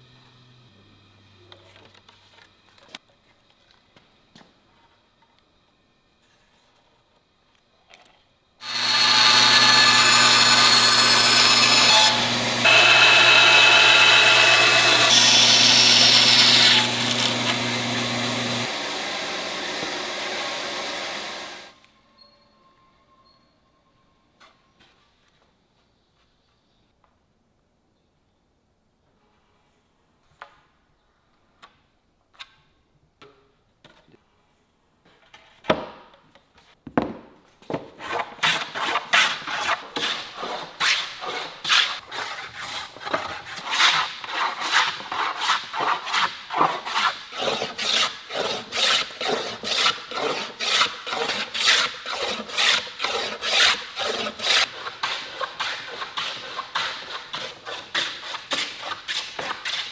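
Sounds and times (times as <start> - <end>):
hand tool rasping wood: 8.6 - 21.7, 39.5 - 59.9.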